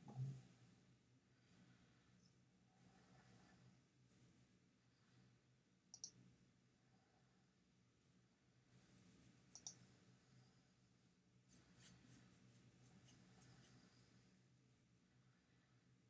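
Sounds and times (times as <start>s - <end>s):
computer mouse clicks: 5.9s - 6.2s, 9.5s - 9.8s.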